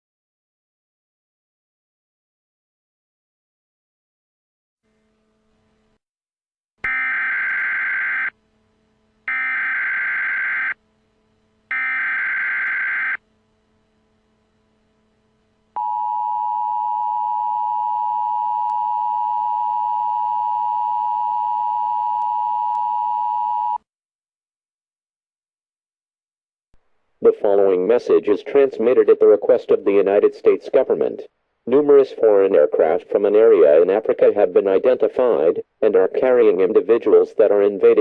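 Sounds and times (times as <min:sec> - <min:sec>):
two-tone alert drone: 0:06.8 - 0:08.4, 0:09.3 - 0:10.8, 0:11.7 - 0:13.2.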